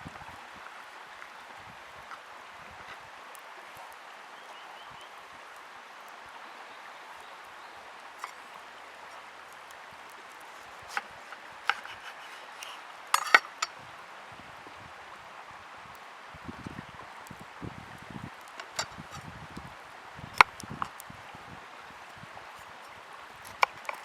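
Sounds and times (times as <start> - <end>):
steady outdoor hiss: 0.0 - 24.0
utensils clinking against pans: 11.7 - 13.7.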